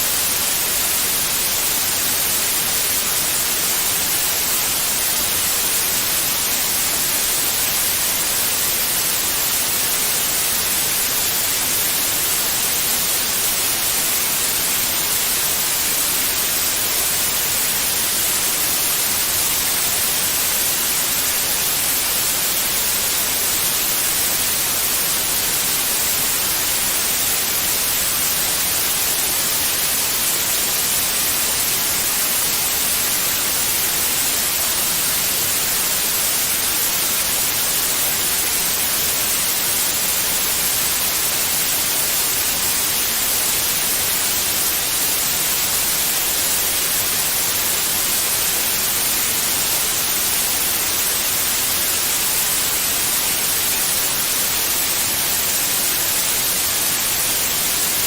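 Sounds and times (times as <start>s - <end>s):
white noise hiss: 0.0s - 58.0s.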